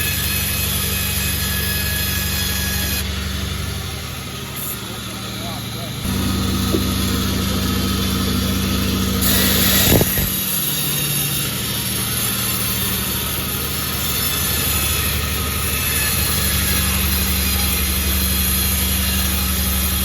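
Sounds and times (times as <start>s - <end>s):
sawmill engine running: 0.0s - 20.0s
rasping hiss: 4.4s - 20.0s.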